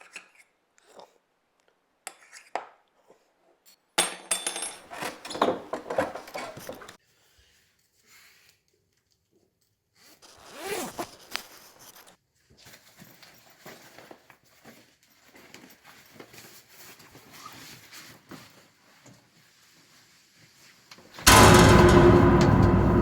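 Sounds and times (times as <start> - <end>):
small clicks and rustles: 7.8 - 21.0.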